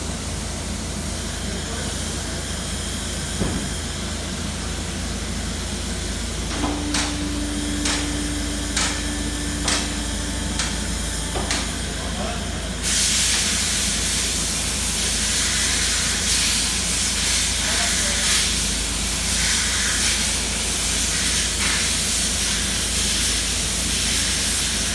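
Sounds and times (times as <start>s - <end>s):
steady hum: 3.5s - 15.7s
sharp suspension knocks: 6.5s - 11.8s.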